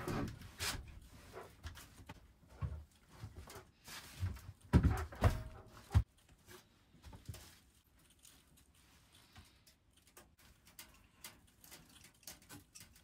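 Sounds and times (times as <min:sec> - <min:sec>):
knocks and clunks: 0:04.3 - 0:06.1.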